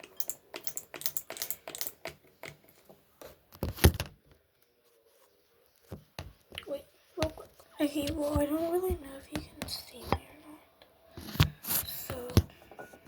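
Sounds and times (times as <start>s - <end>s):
clicks and taps of handled objects: 0.0s - 3.0s.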